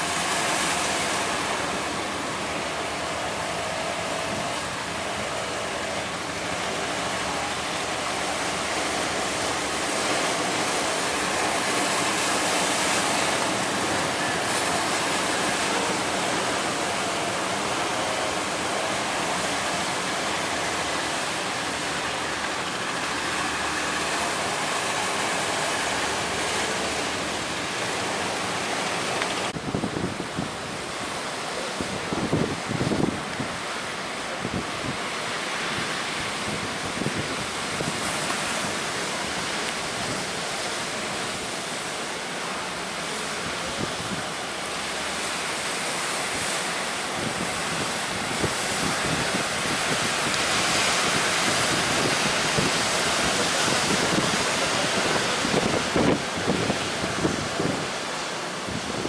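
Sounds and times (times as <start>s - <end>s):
surf breaking: 0.0s - 29.8s
wind buffeting microphone: 0.0s - 41.6s, 43.3s - 59.0s.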